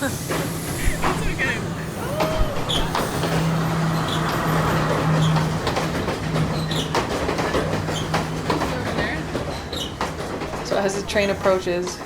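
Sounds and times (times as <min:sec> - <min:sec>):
diesel locomotive drone: 0:00.0 - 0:09.6
rail and wheel noise: 0:00.0 - 0:12.0.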